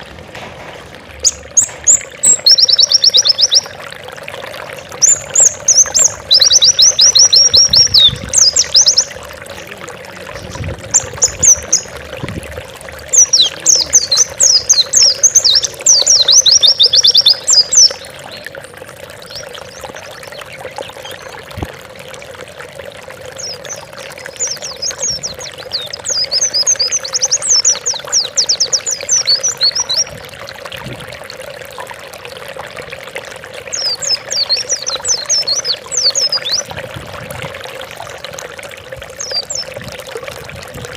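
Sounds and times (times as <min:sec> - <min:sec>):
running water: 0:00.0 - 0:40.9
bird twittering trills: 0:01.2 - 0:03.8, 0:04.6 - 0:12.2, 0:13.0 - 0:21.4, 0:23.4 - 0:30.2, 0:33.7 - 0:36.7, 0:39.1 - 0:39.8.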